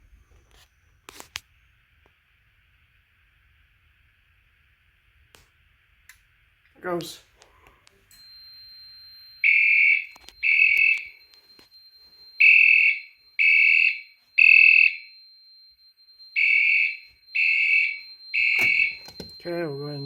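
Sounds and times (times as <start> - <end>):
steady high-pitched tone: 8.1 - 20.0
fire alarm horn blasts: 9.4 - 20.0.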